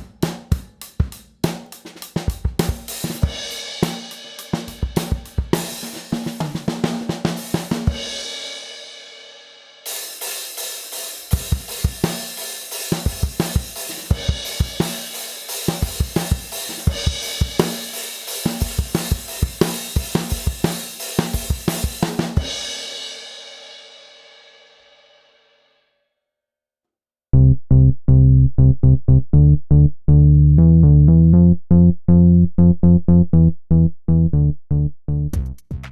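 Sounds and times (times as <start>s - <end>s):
drum kit playing grooves: 0.0s - 8.6s, 9.9s - 22.9s
electronic music with heavy bass: 27.4s - 35.9s.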